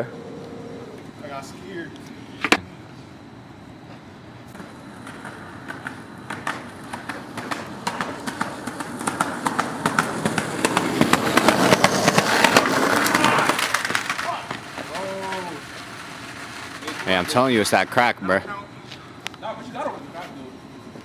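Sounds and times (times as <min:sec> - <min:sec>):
skateboard wheels rolling on pavement: 0:03.9 - 0:18.4
skateboard wheels clacking over cracks: 0:04.5 - 0:17.9.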